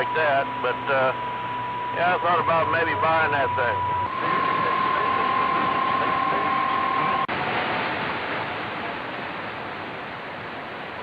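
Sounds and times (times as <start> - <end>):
steady whistling tone: 0.0 - 7.3
radio static hiss: 0.0 - 10.9.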